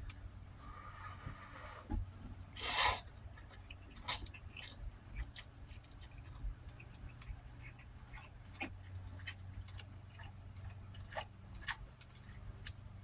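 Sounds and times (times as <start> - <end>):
loud hissing burst: 2.6 - 3.0
wet chewing and mouth clicks: 3.1 - 13.0.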